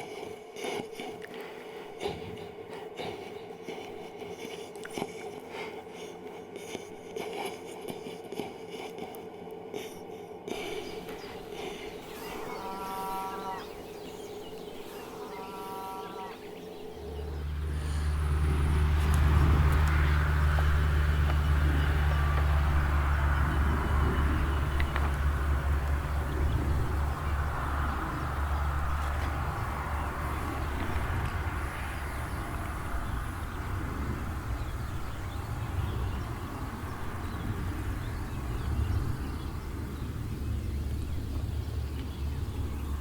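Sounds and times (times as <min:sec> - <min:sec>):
low rumble: 0:11.0 - 0:43.0.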